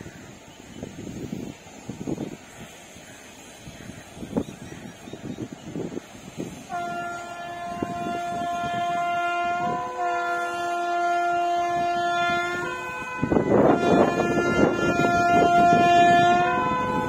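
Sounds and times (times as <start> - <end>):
rush of passing train: 0.0 - 17.0
locomotive air horn: 5.3 - 17.0.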